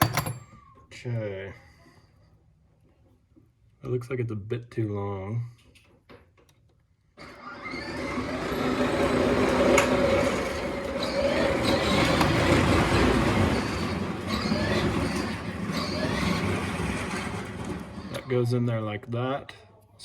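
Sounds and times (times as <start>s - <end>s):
mechanical whirring and rumbling: 7.6s - 18.6s.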